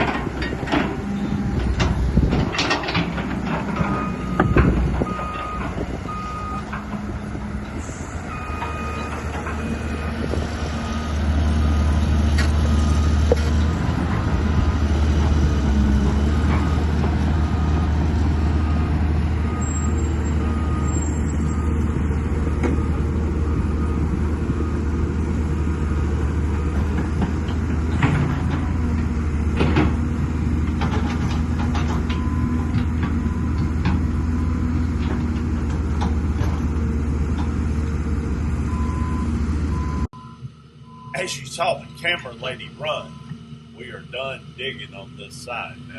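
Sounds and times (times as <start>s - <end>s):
machine knocks and clanks: 0.0s - 1.0s, 1.6s - 5.8s, 26.9s - 34.1s
excavator diesel engine: 0.0s - 45.9s.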